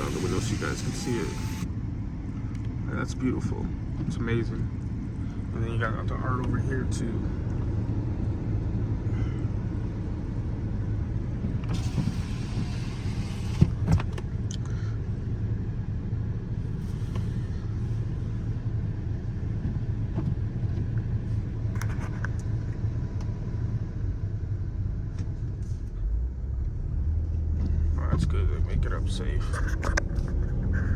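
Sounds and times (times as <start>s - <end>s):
car engine and road rumble: 0.0s - 30.9s
hiss: 11.7s - 13.7s.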